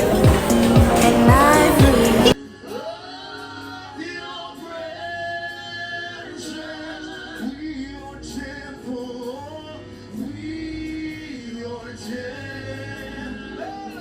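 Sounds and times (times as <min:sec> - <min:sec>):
male and female voices singing: 0:00.0 - 0:02.4
steady bass: 0:00.0 - 0:02.4.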